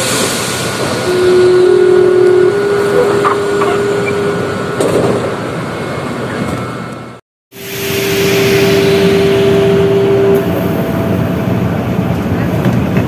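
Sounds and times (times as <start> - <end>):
train and station noise: 0.0 - 13.0
train door buzzer tone: 1.0 - 4.9, 7.5 - 11.8
higher buzzer tone: 1.1 - 4.6, 7.6 - 11.5.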